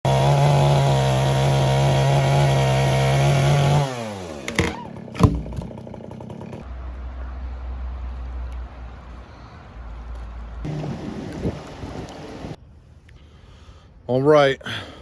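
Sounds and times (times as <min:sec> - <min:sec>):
chainsaw running: 0:00.0 - 0:06.7, 0:10.7 - 0:12.6
sharp knocks: 0:04.5 - 0:05.8.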